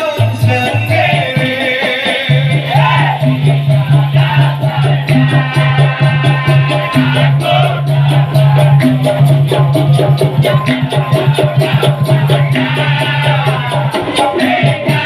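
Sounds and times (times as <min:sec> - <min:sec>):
maracas shaking: 0:00.0 - 0:15.0.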